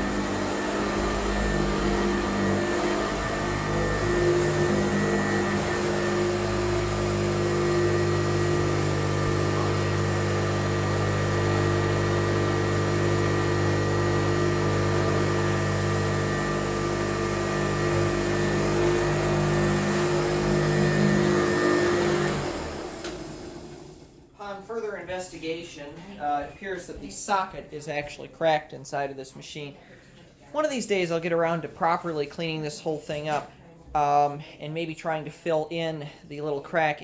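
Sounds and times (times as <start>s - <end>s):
vacuum cleaner running: 0.0s - 24.3s.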